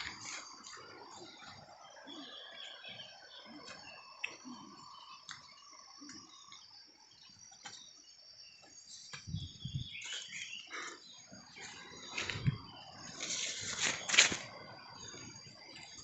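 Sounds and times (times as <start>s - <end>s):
insects droning: 0.0s - 16.0s
rustling: 13.1s - 14.6s.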